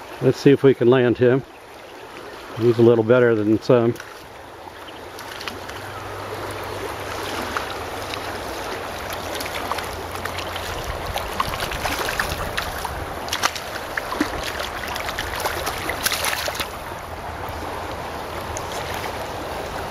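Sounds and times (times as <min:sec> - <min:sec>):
shallow stream running: 0:00.0 - 0:19.9
small splashes and knocks: 0:02.2 - 0:17.6.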